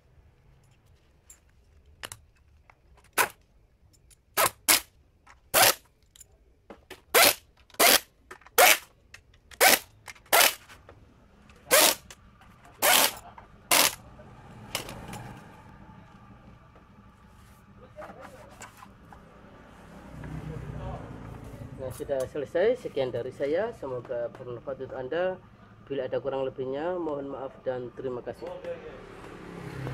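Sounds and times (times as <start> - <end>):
impact wrench bursts: 5.5 - 5.8, 7.1 - 8.9, 9.5 - 10.8, 11.6 - 12.2, 12.8 - 14.0.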